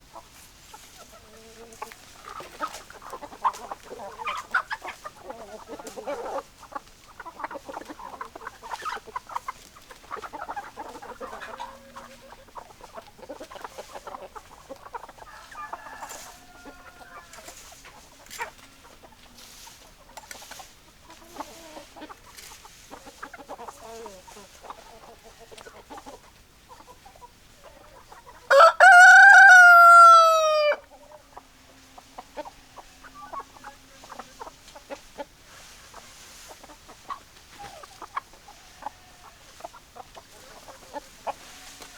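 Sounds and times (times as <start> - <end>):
chickens clucking: 0.0 - 41.9
rooster crowing: 15.3 - 17.5, 28.5 - 30.8.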